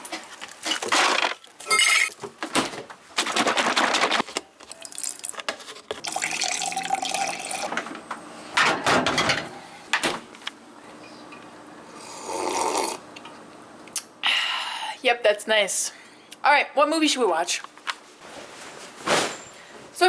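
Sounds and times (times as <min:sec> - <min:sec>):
water pouring: 0:06.0 - 0:07.7.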